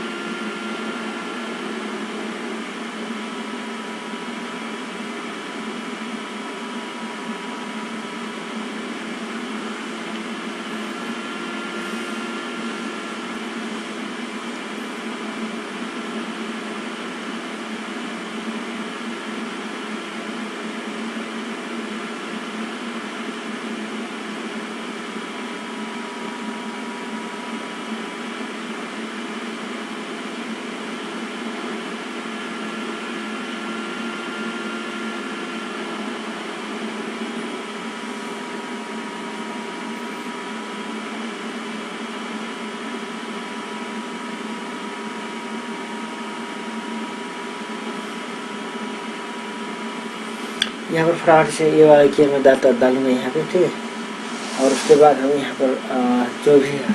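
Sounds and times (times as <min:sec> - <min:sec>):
mechanical hum: 0:00.0 - 0:56.9.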